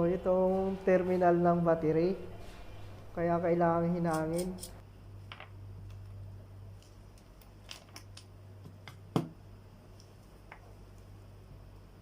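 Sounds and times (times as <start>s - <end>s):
small parts and tools clicking: 6.8s - 9.0s.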